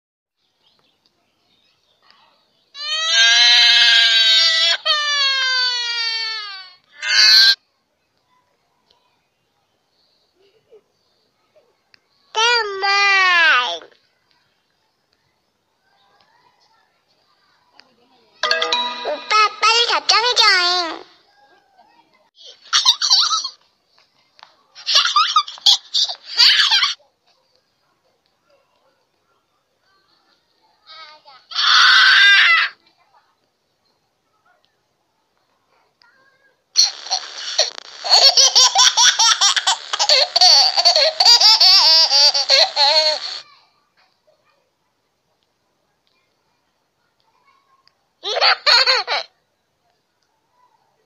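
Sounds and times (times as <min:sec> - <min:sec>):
baby crying: 0:02.8 - 0:07.6
baby giggling and laughing: 0:18.4 - 0:20.7, 0:36.8 - 0:43.4.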